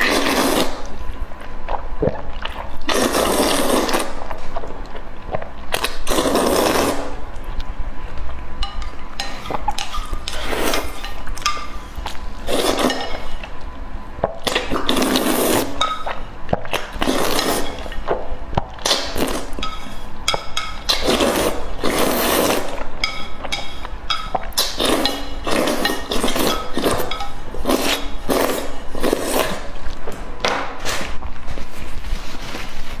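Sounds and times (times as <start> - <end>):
wet chewing and slurping: 0.0 - 32.2
utensils clinking against dishes: 8.6 - 13.5, 14.5 - 16.2, 17.0 - 18.0, 18.8 - 29.7.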